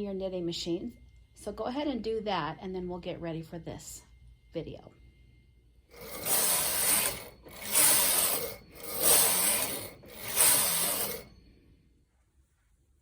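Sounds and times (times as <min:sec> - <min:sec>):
knitting machine carriage ratcheting: 0:06.0 - 0:11.3.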